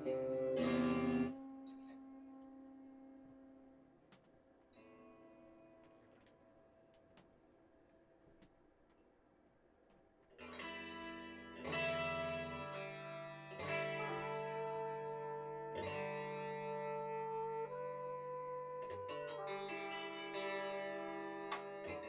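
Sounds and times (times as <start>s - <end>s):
electric guitar chords ringing: 0.0s - 2.4s, 10.4s - 22.0s.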